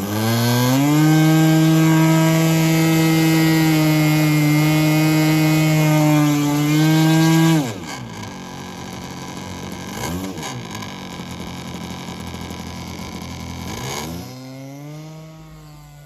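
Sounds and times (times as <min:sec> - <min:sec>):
model plane engine: 0:00.0 - 0:16.0.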